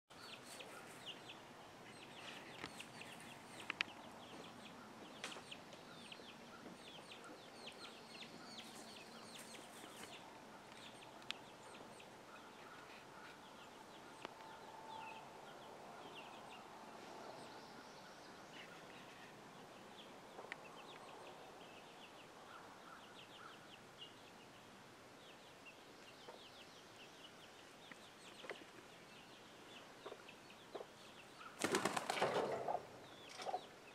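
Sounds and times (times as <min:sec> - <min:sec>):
chicks peeping: 0:00.2 - 0:14.6.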